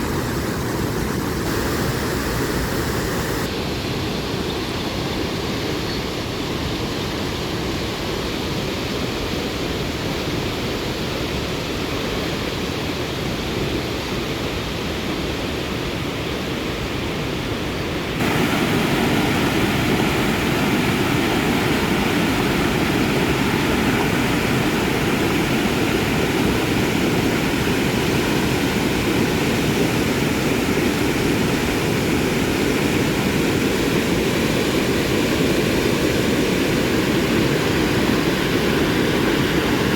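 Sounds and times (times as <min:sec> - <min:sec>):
stream water rushing: 0:00.0 - 0:03.5, 0:16.8 - 0:39.9.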